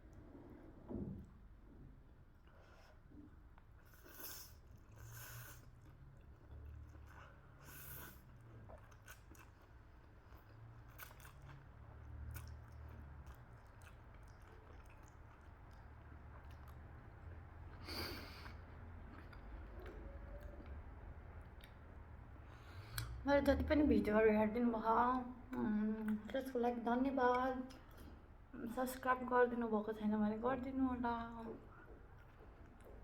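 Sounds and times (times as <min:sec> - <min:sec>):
faint low hum: 0:00.0 - 0:33.0
wet chewing and mouth smacks: 0:03.5 - 0:17.8, 0:18.4 - 0:23.2, 0:31.7 - 0:33.0.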